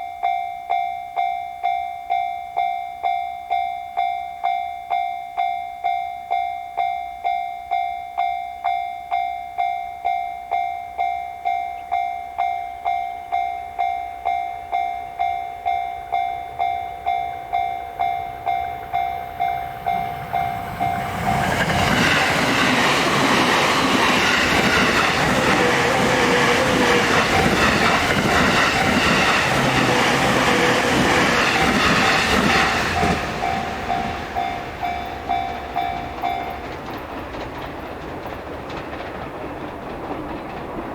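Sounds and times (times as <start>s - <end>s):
level-crossing alarm bell: 0.0s - 37.0s
train wheels clattering over rails: 18.0s - 40.9s.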